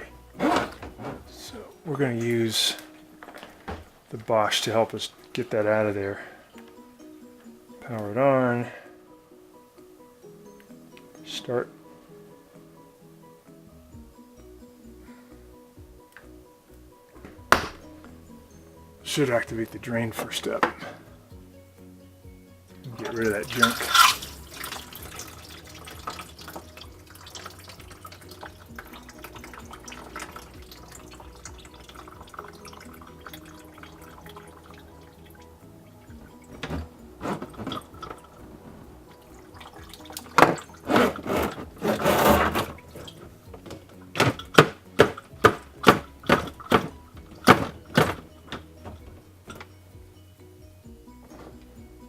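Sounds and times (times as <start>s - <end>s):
water gushing from hose: 22.9s - 35.3s, 39.1s - 43.3s
drain pump running: 22.9s - 49.7s.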